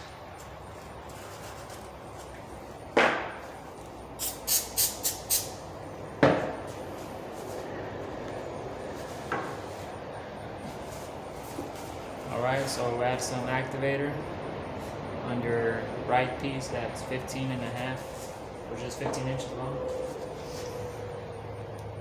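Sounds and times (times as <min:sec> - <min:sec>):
short air hisses: 0:04.2 - 0:05.6.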